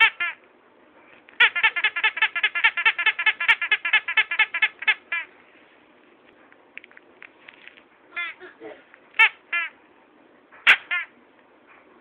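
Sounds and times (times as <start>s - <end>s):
squeaky toy squeaking: 0.0s - 0.4s, 1.4s - 5.3s, 8.2s - 8.4s, 9.2s - 9.8s, 10.6s - 11.1s.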